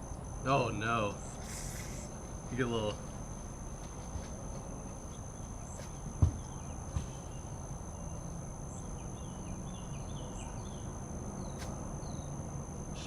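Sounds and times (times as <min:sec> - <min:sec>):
crickets and insects droning: 0:00.0 - 0:13.0
soccer ball kicked thumps: 0:05.8 - 0:07.2.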